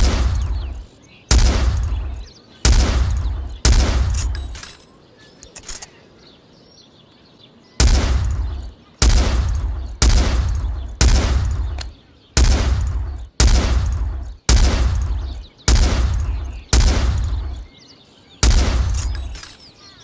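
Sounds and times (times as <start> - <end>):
rifle shots echoing: 0.0 - 4.8, 7.8 - 17.7, 18.4 - 19.6.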